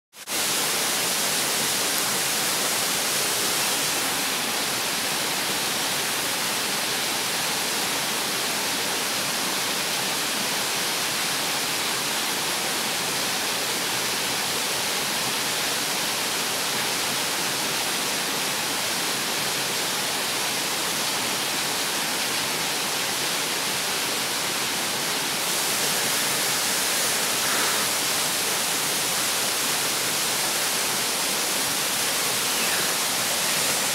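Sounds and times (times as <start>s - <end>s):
waterfall rushing: 0.2s - 33.9s.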